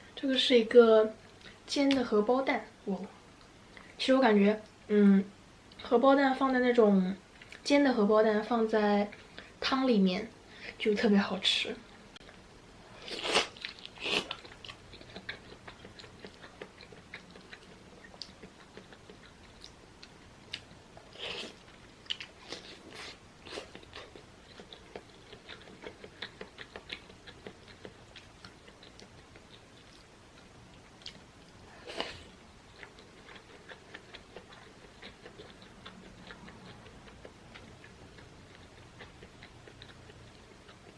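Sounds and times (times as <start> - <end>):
person chewing food: 13.0 - 40.9.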